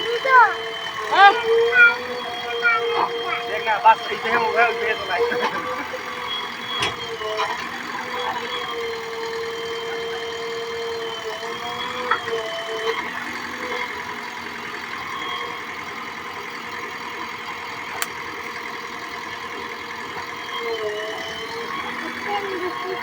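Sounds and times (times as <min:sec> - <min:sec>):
diesel engine running: 0:00.0 - 0:23.0.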